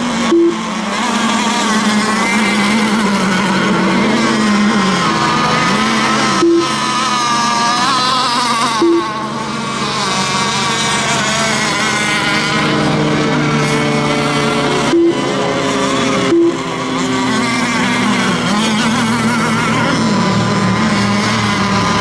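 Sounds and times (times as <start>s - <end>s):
model boat engines buzzing: 0.0s - 22.0s
short low beeps: 0.2s - 0.7s, 6.4s - 6.8s, 8.8s - 9.1s, 14.9s - 15.3s, 16.3s - 16.6s.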